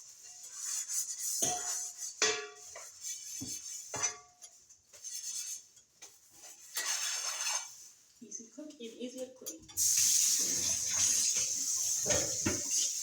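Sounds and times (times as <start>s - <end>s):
kitchenware knocking and clinking: 11.2s - 12.9s.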